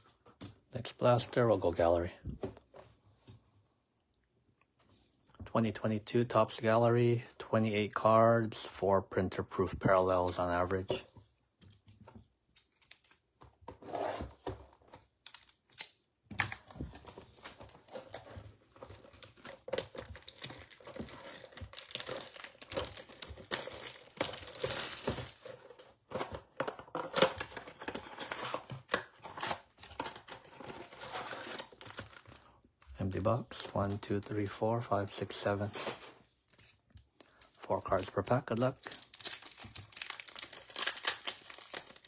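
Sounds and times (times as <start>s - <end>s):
card packs rustling: 16.6s - 32.6s, 34.8s - 42.0s
plastic wrap tearing and crinkling: 19.0s - 25.8s, 37.8s - 42.0s.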